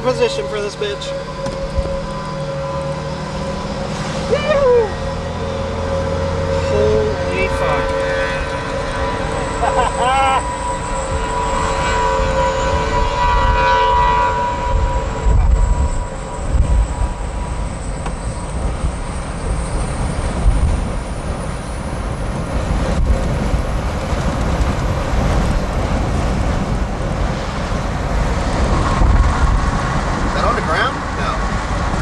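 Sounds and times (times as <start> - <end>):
vehicle horn chord: 0.0 - 17.5
road rumble: 0.0 - 32.0
wind noise: 0.0 - 32.0.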